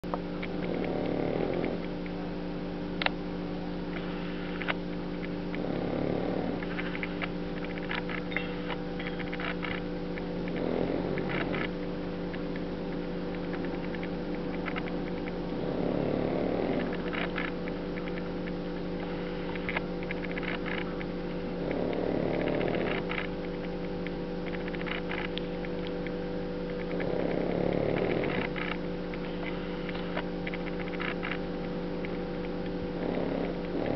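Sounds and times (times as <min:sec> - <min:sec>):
steady electrical hum: 0:00.0 - 0:33.9
dog snoring: 0:00.6 - 0:01.9, 0:05.5 - 0:07.2, 0:10.4 - 0:11.7, 0:15.5 - 0:17.6, 0:21.4 - 0:23.3, 0:26.8 - 0:30.3, 0:32.9 - 0:33.9.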